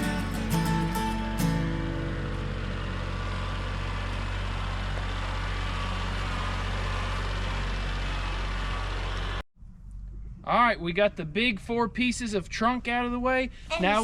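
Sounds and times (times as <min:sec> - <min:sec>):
strummed guitar music: 0:00.0 - 0:04.2
heavy engine running: 0:00.0 - 0:09.4.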